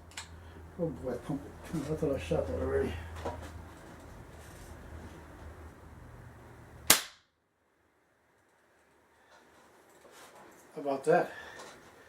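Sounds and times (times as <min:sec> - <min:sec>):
air rifle firing: 0:06.9 - 0:07.2.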